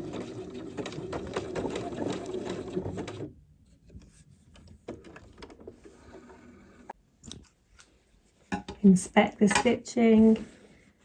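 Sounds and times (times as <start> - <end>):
sewing machine stitching: 0.0 - 3.4, 4.9 - 6.9.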